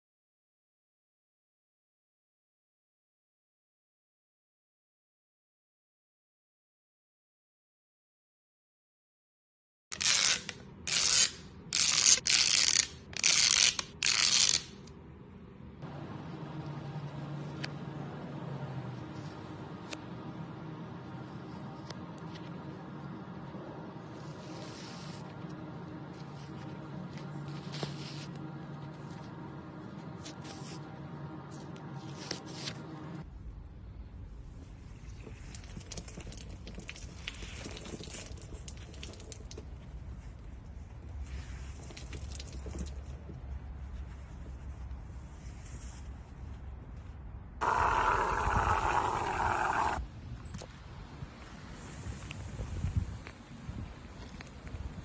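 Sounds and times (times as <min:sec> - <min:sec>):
steady low hum: 0:15.0 - 0:35.4.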